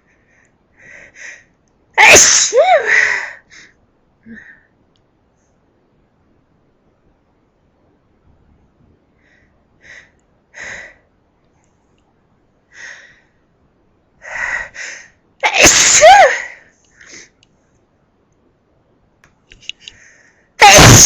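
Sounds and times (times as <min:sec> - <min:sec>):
person sneezing: 0:15.5 - 0:16.5, 0:20.6 - 0:21.0.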